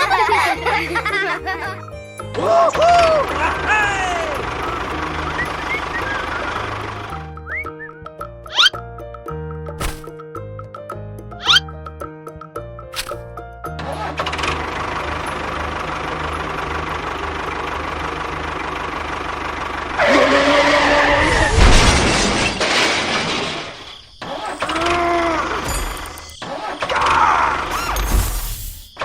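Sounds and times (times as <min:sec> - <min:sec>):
small engine running: 0:02.7 - 0:07.6, 0:13.8 - 0:21.0.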